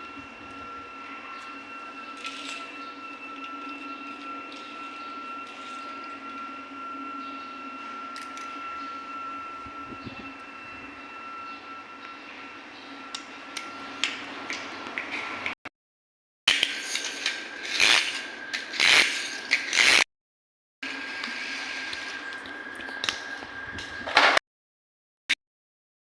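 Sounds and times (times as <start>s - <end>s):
mechanism high whine: 0.0s - 15.6s, 16.5s - 20.0s, 20.8s - 24.4s
loud clicks and scrapes: 16.5s - 20.0s.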